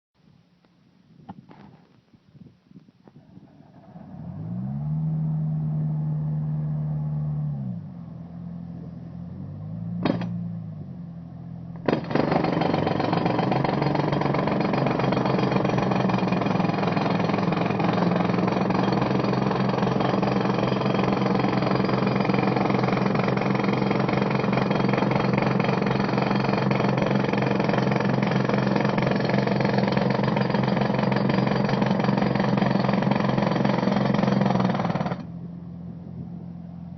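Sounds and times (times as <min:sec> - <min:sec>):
engine revving: 0:03.7 - 0:10.8
jackhammer hammering: 0:10.0 - 0:10.4, 0:11.8 - 0:35.3.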